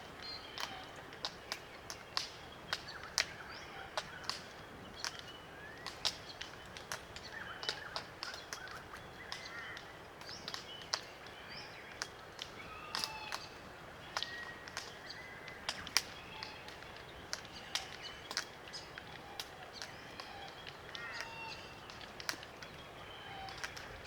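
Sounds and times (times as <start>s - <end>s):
clicks and cracks of birds feeding: 0.0s - 24.0s
soft creaking bird calls: 0.2s - 24.0s.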